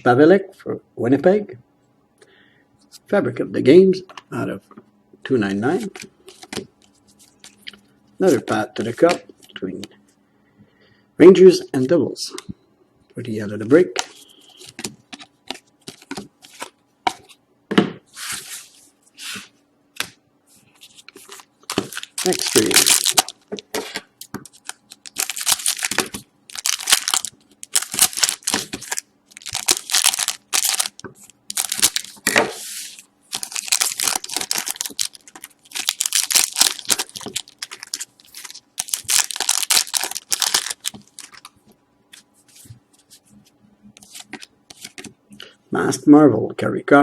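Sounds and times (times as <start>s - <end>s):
cards being handled: 5.7s - 9.9s, 14.0s - 17.4s, 20.8s - 45.2s
card wrappers tearing and crinkling: 20.8s - 41.6s, 44.0s - 45.1s.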